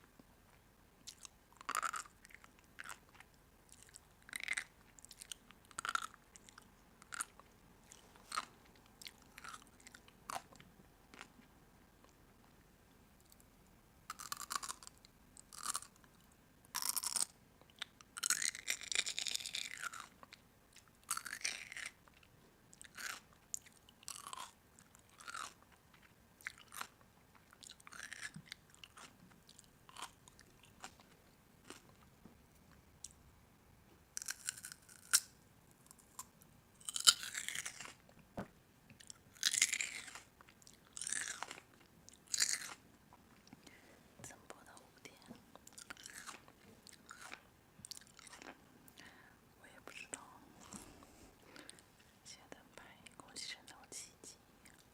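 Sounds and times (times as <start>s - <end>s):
crunchy food being chewed: 0.5s - 12.6s, 14.1s - 33.2s, 34.2s - 38.2s, 38.9s - 49.2s, 54.6s - 54.9s.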